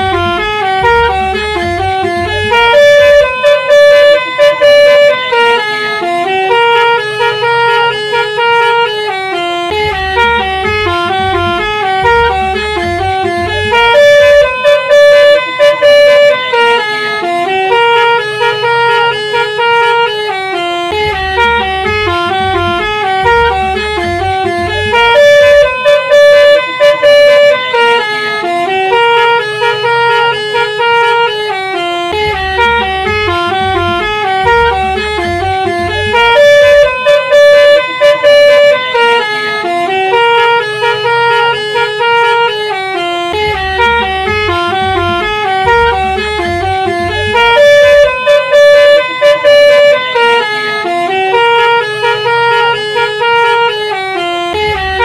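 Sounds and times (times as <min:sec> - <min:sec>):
low bass layer: 0:00.0 - 0:05.4, 0:09.7 - 0:17.5, 0:20.9 - 0:27.7, 0:32.1 - 0:38.9, 0:43.4 - 0:49.9
multi-tone bus horn tune: 0:00.0 - 0:55.0.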